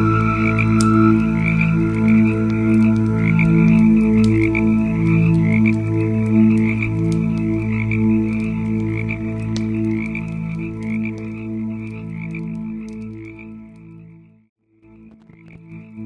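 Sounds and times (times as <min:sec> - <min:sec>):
wood fire crackling: 0:00.0 - 0:13.3
frogs croaking: 0:00.0 - 0:13.8.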